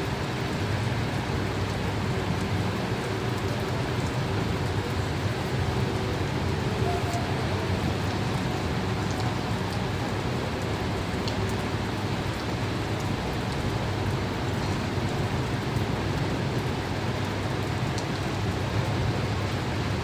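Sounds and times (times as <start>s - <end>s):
steady rain hiss: 0.0s - 20.0s
raindrop ticks: 0.2s - 20.0s.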